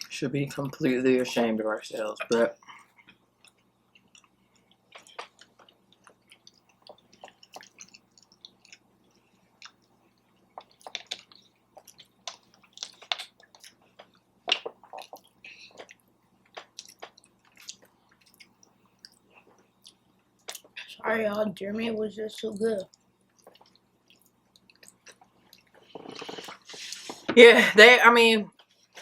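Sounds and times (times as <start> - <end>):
mouth clicks and smacks: 2.2 - 8.9, 9.6 - 20.8, 22.9 - 26.8
person chewing food: 2.2 - 20.8, 22.9 - 27.2.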